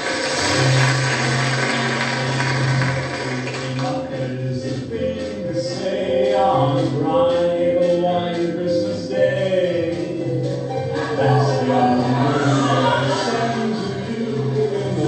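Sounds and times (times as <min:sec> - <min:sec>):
backing music: 0:00.0 - 0:15.0
group of voices singing: 0:03.2 - 0:15.0.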